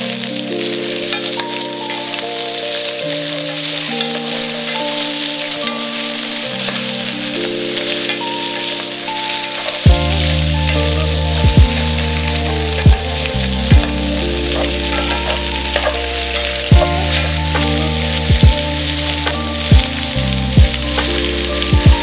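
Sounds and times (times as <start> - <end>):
food sizzling in a pan: 0.0 - 22.0
loud low thumps: 16.7 - 22.0.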